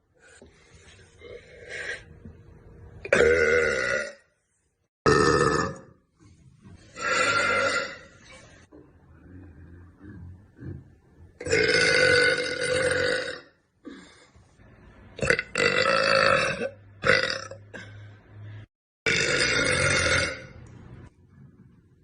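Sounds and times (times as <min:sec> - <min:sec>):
woman belching: 0:03.0 - 0:04.2, 0:05.1 - 0:05.9, 0:11.4 - 0:13.5, 0:15.2 - 0:17.8.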